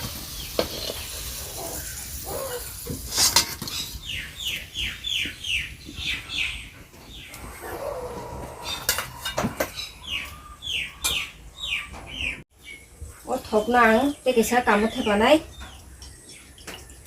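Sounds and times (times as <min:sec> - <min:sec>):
metal utensils clinking: 0:03.0 - 0:03.9, 0:08.7 - 0:09.8
bird chirping: 0:03.6 - 0:17.0.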